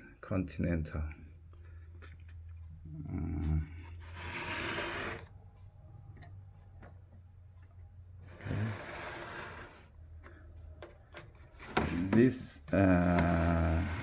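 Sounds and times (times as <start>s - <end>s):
typewriter rubbing and sliding: 4.0s - 5.3s, 8.2s - 9.9s, 11.5s - 14.0s.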